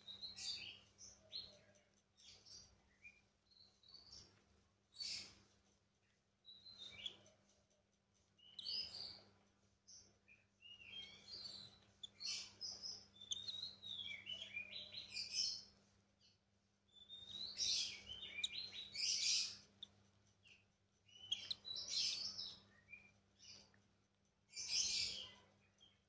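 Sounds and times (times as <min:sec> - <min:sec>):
chicks chirping begging calls: 0:21.2 - 0:22.7.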